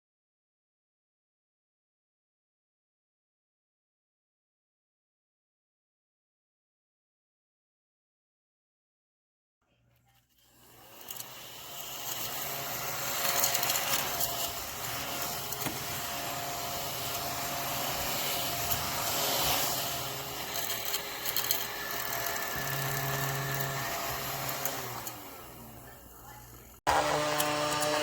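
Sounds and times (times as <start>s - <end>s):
small vacuum motor whirring: 10.3s - 28.0s.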